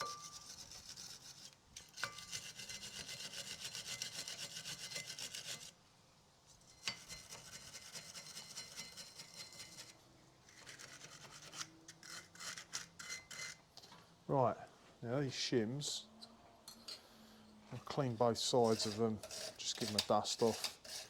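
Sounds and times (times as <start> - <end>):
hand tool scraping metal: 0.0 - 5.7, 6.5 - 13.6, 17.8 - 21.0.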